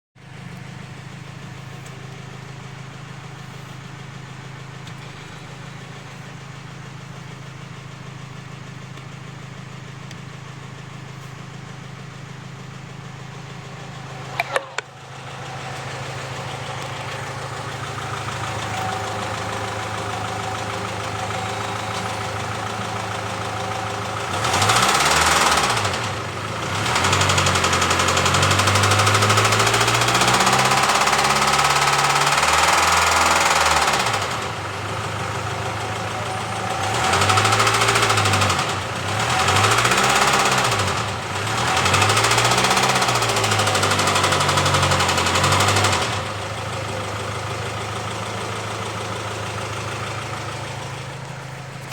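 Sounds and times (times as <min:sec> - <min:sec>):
engine knocking: 0:00.2 - 0:51.9
car engine revving: 0:13.2 - 0:51.9.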